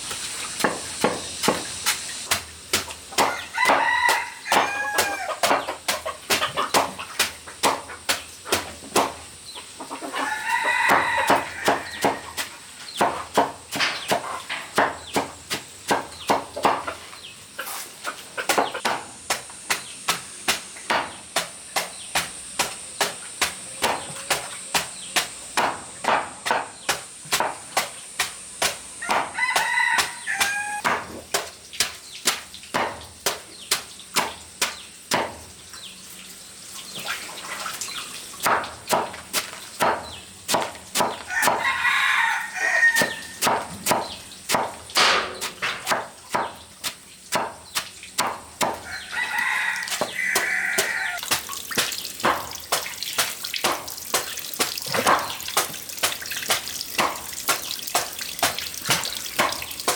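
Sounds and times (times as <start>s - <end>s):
knife chopping on cutting board: 0.6s - 9.2s, 10.8s - 16.9s, 18.5s - 35.4s, 38.4s - 41.7s, 43.0s - 48.9s, 49.8s - 59.9s
rooster crowing: 3.3s - 5.4s, 10.1s - 12.4s, 29.0s - 30.8s, 41.3s - 43.4s, 48.8s - 51.2s.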